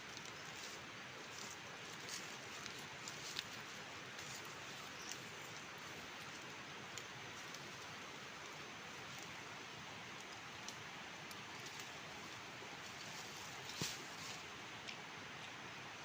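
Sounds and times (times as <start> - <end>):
outdoor background hiss: 0.0 - 16.0
faint soft ticks: 10.1 - 12.0.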